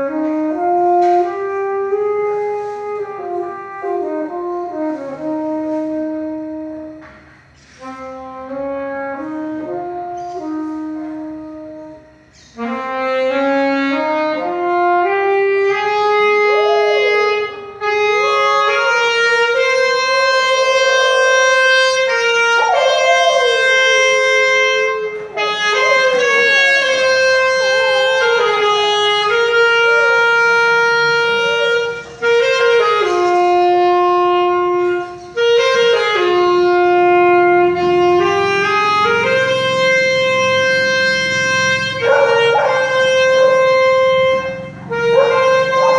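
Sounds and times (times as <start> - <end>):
saxophone slow melody: 0.0 - 45.9
dog howling: 16.4 - 32.9, 40.8 - 45.9.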